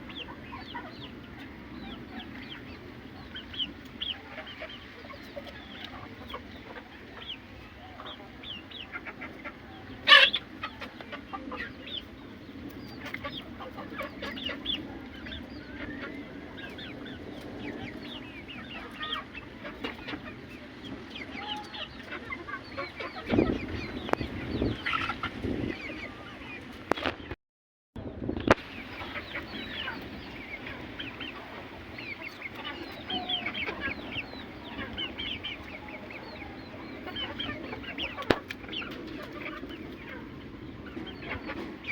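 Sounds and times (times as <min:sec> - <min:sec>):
chickens clucking: 0:00.0 - 0:27.4, 0:28.4 - 0:41.9
short chirping calls: 0:28.6 - 0:38.4.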